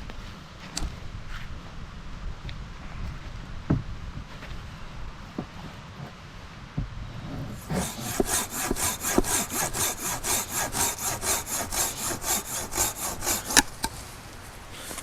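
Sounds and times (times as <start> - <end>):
hand saw cutting wood: 7.2 - 14.0.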